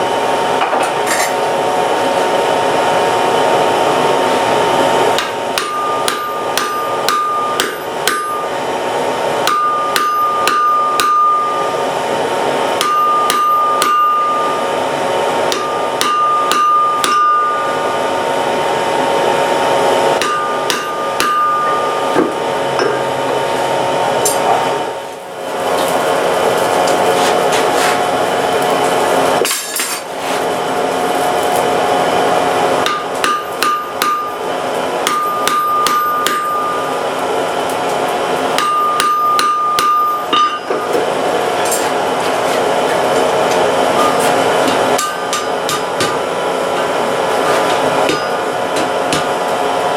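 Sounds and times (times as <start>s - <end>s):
hammer striking iron on anvil: 5.1s - 8.6s, 9.4s - 11.8s, 12.7s - 14.6s, 15.5s - 17.9s, 20.2s - 23.1s, 32.8s - 37.0s, 38.5s - 41.0s, 44.0s - 46.2s, 48.0s - 49.4s.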